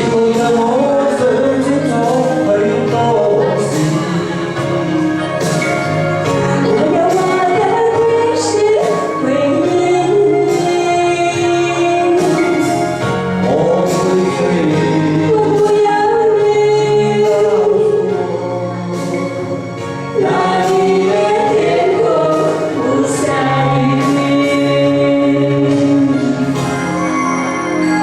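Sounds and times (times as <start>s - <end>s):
person singing: 0.0s - 19.5s
musical accompaniment: 0.0s - 28.0s.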